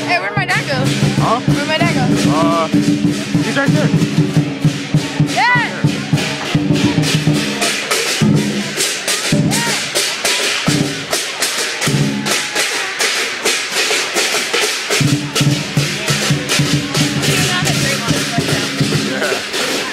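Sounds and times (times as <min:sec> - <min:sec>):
cymbals clashing: 0:00.0 - 0:19.9
drum beating: 0:00.0 - 0:19.9.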